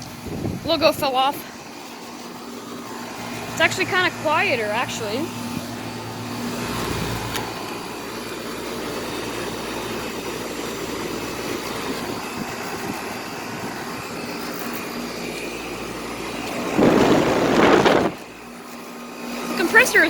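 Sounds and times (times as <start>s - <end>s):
air conditioner unit running: 0.0s - 20.0s
loud rush of noise: 16.6s - 18.2s.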